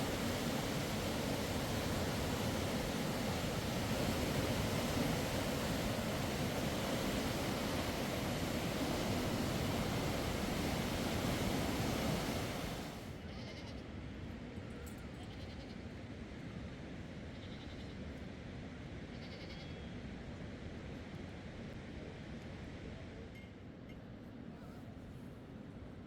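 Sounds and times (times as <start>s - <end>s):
rain and river water rushing: 0.0s - 13.1s
faint high animal calls: 13.2s - 13.8s, 17.4s - 18.0s, 19.1s - 19.9s.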